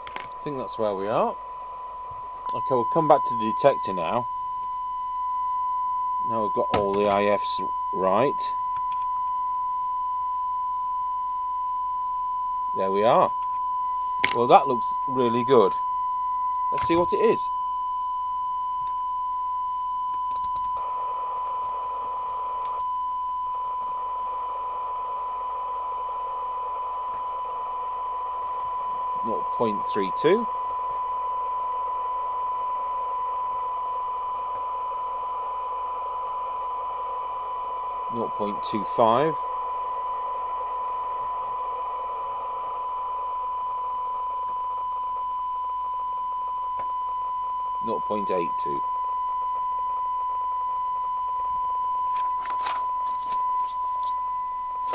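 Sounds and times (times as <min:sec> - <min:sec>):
steady test tone: 0:00.0 - 0:54.9.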